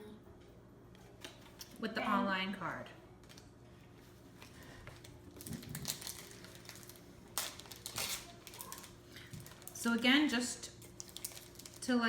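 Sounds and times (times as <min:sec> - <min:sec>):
cards and foil wrappers rustling: 0:04.1 - 0:12.0.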